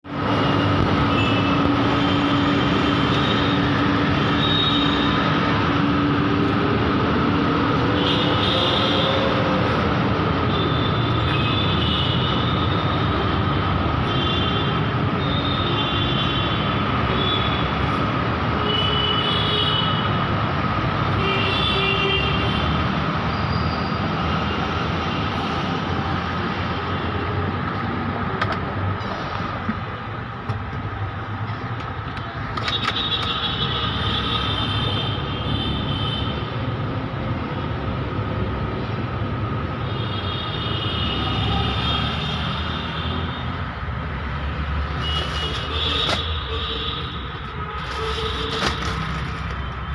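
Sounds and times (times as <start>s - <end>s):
vehicle road and engine noise: 0.0s - 49.9s.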